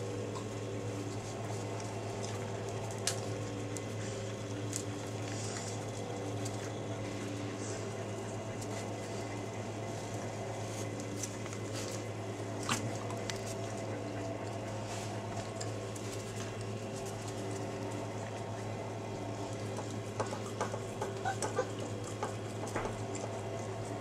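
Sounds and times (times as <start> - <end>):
steady low hum: 0.0 - 24.0
wet squishy sounds: 1.2 - 20.2.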